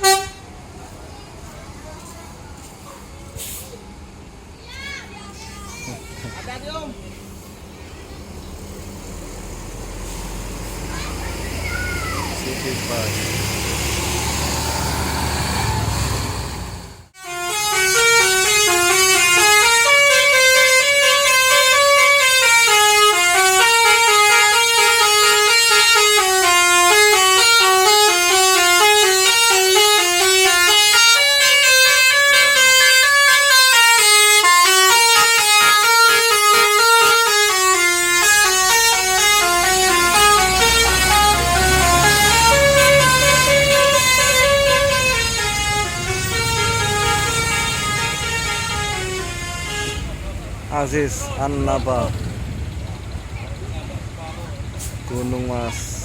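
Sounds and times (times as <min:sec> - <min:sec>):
bus horn playing melody: 0:00.0 - 0:00.5, 0:17.1 - 0:50.5
bus engine: 0:00.0 - 0:56.0
traffic noise: 0:00.0 - 0:56.0.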